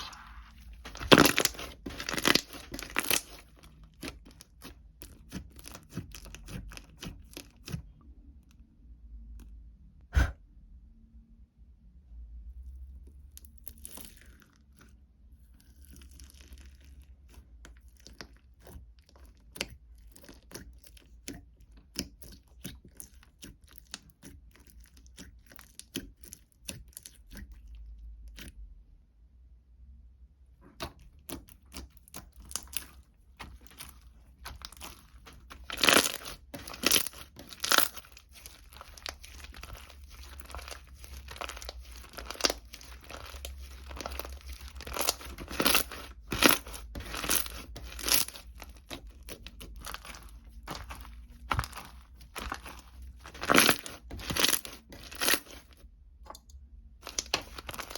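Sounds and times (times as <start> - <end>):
paper crinkling and tearing: 0.0 - 4.3, 33.4 - 55.8, 57.0 - 57.9.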